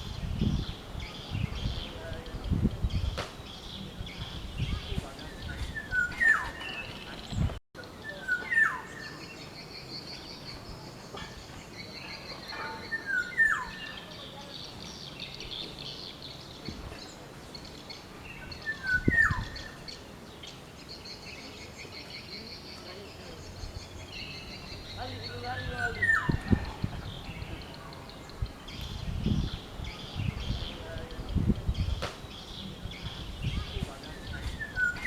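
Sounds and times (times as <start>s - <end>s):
bird whistled call: 18.6s - 19.8s.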